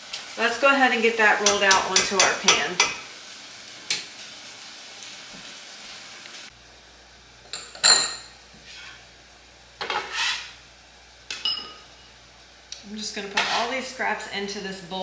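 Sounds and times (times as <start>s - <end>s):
kitchenware clinks and knocks: 7.5s - 8.3s, 11.3s - 11.9s.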